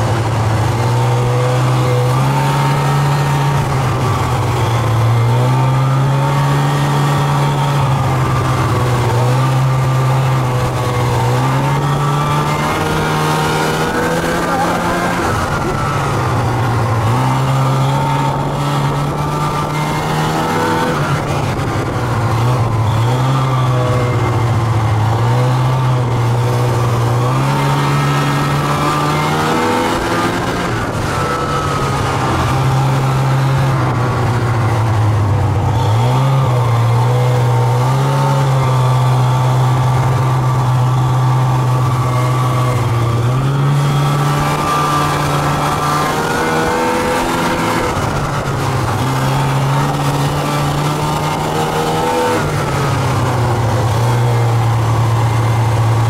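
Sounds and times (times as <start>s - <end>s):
snowmobile engine revving: 0.0s - 56.0s.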